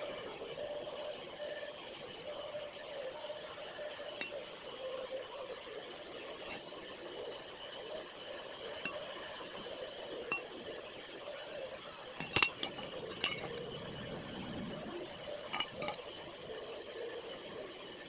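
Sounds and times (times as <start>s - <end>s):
steady hum: 0.0s - 18.0s
metal tools clinking: 12.2s - 13.7s, 15.4s - 16.1s.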